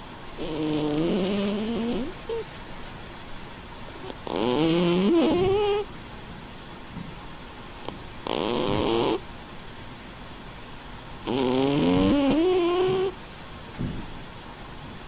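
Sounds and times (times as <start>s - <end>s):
cat snoring: 0.4s - 2.4s, 4.0s - 5.9s, 7.8s - 9.2s, 11.2s - 13.2s.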